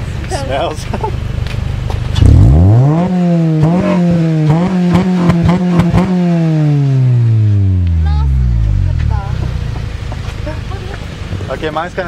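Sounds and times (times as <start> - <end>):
car engine revving: 1.3 - 12.0
exhaust pops: 7.7 - 11.6.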